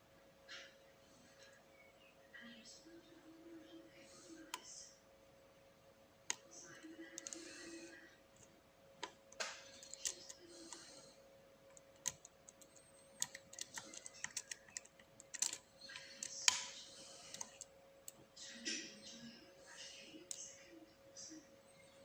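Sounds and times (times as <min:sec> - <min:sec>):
faint steady hum: 0:00.0 - 0:22.0
lock pick clicking in padlock: 0:13.2 - 0:15.6.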